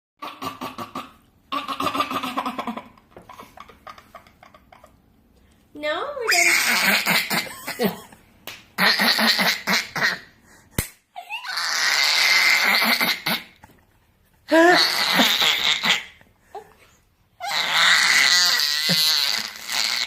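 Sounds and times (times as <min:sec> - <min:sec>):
laughter: 0:02.4 - 0:05.0, 0:07.3 - 0:08.3
baby squealing vocal noises: 0:06.2 - 0:07.6, 0:11.2 - 0:13.5, 0:14.5 - 0:16.2, 0:17.4 - 0:20.0.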